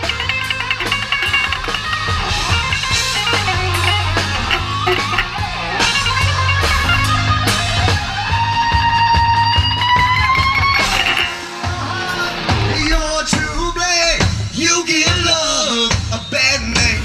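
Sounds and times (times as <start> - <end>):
lead electric guitar: 0.0 - 13.1
live rock band: 0.0 - 17.0.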